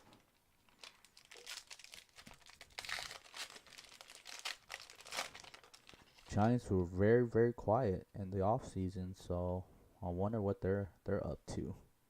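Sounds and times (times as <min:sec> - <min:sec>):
wrapper crinkling and tearing: 0:00.1 - 0:06.3.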